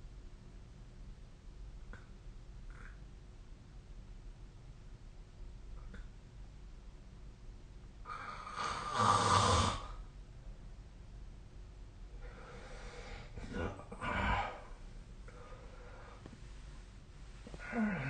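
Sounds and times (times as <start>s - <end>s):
person snoring: 8.1s - 10.0s, 12.4s - 14.8s, 17.6s - 18.0s.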